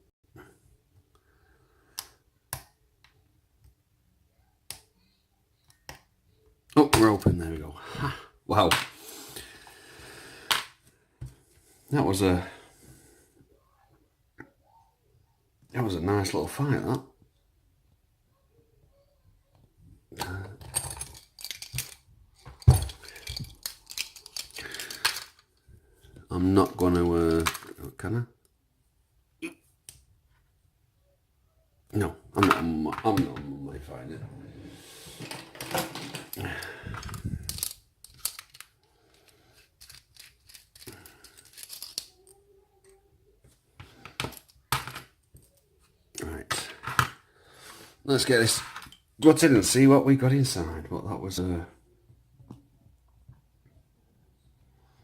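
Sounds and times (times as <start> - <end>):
metal tools clinking: 20.3 - 25.5, 35.2 - 42.4
rustling and scraping: 32.6 - 42.2.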